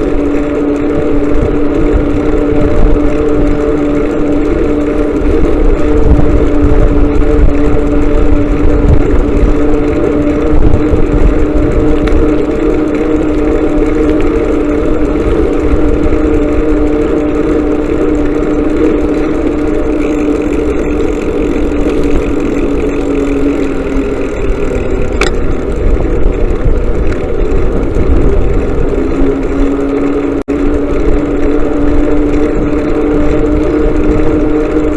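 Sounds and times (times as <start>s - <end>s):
motorcycle engine running: 0.0s - 34.9s
wind and road rumble: 0.0s - 34.9s.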